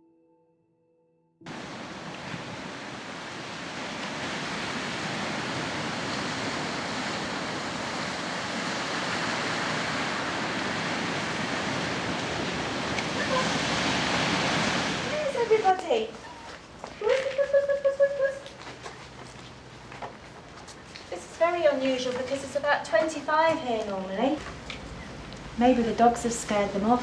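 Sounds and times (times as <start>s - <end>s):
rain falling: 1.5s - 17.5s, 23.7s - 27.0s.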